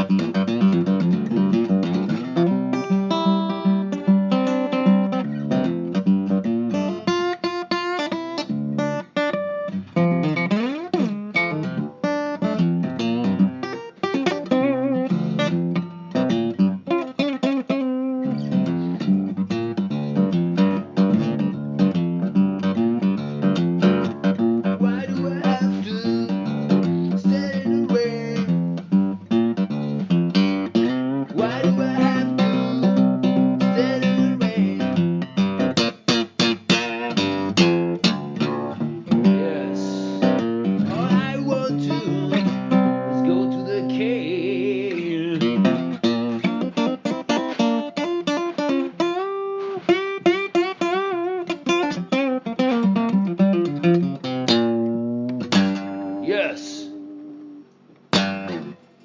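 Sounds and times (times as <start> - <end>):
guitar plucking and strumming: 0.0 - 59.0.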